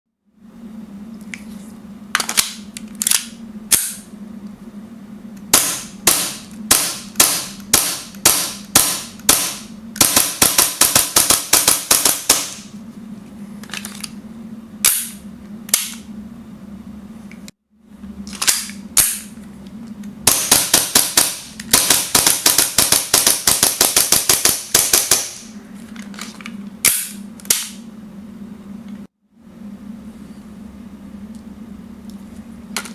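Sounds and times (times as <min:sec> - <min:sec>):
airsoft pistol shots: 0:05.5 - 0:12.6, 0:20.3 - 0:25.4.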